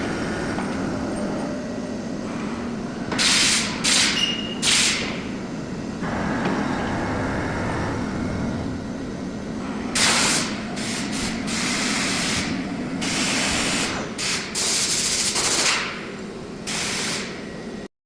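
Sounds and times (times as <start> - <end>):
machine humming: 0.0 - 15.1
compressed air hissing bursts: 3.2 - 5.2, 9.6 - 15.7.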